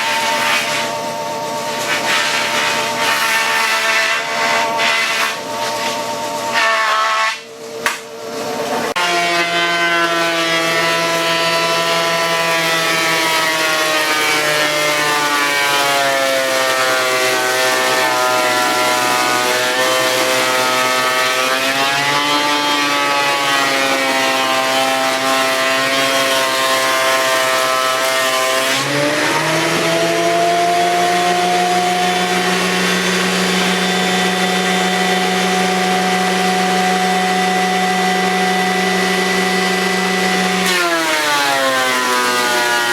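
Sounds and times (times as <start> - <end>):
wood planer motor whining: 0.0 - 42.9.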